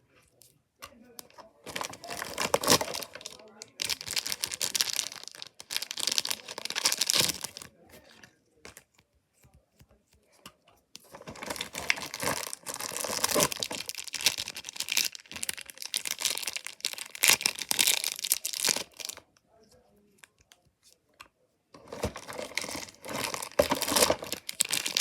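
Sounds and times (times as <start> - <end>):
packaging crinkling and tearing: 1.6 - 7.8, 11.1 - 19.2, 21.8 - 25.0.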